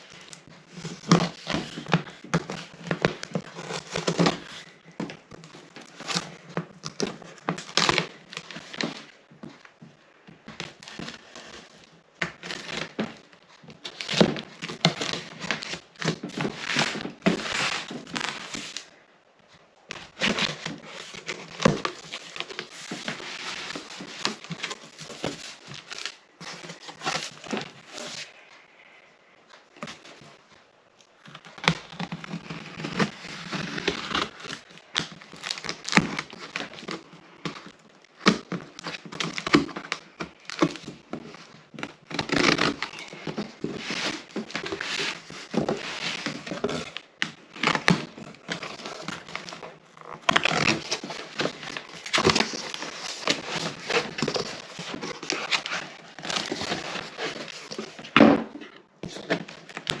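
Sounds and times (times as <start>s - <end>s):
packaging crinkling and tearing: 0.0s - 9.7s, 10.4s - 19.0s, 19.9s - 28.6s, 31.1s - 60.0s
cardboard knocking and scraping: 0.1s - 18.8s, 31.6s - 60.0s.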